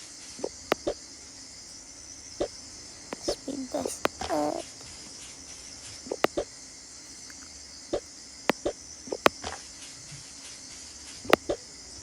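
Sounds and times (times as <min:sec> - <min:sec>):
faint steady hiss: 0:00.0 - 0:12.0.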